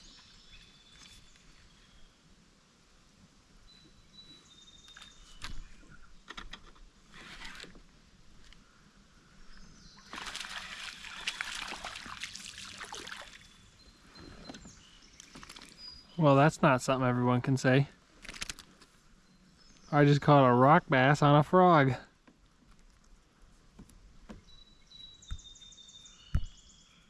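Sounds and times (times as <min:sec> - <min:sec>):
birds chirping: 0:03.6 - 0:22.4, 0:23.4 - 0:27.0
water splashing and sloshing: 0:10.0 - 0:13.6
sharp clicks: 0:18.2 - 0:18.9.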